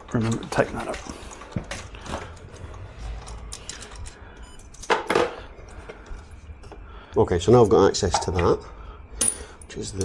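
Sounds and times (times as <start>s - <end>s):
metal parts clinking: 0.2s - 5.3s, 9.2s - 10.0s.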